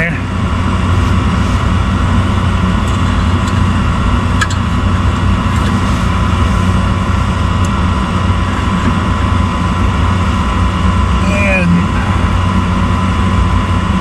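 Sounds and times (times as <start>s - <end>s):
gas heating unit humming: 0.0s - 14.0s.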